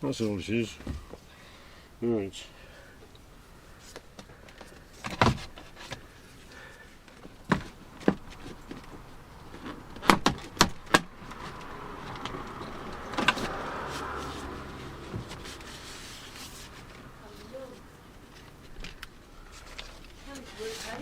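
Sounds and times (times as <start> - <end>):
clicks and knocks of car door parts: 4.1 - 6.1, 7.1 - 13.6.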